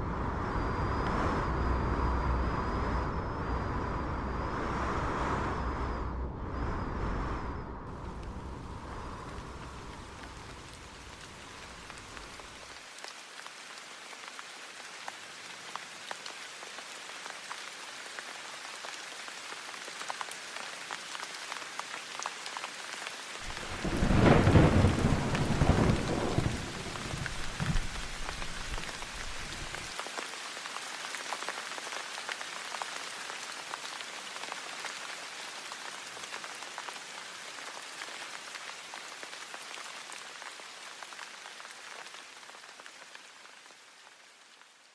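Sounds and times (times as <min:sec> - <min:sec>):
thunder rumbling: 0:00.0 - 0:12.6, 0:23.4 - 0:29.9
steady rain falling: 0:00.0 - 0:44.9.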